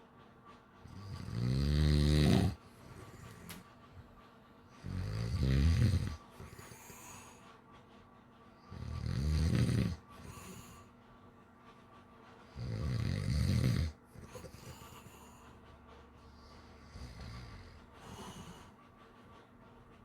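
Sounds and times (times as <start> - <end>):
person snoring: 1.3 - 2.6
quiet breathing: 9.6 - 11.1, 12.8 - 19.0.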